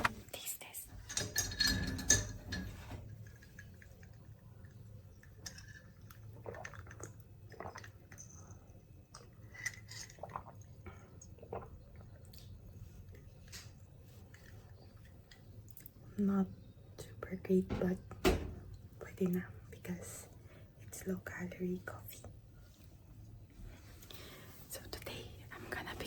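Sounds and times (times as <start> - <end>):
low steady hum: 0.0 - 26.0
mouth smacks and clicks sipping: 9.1 - 10.7.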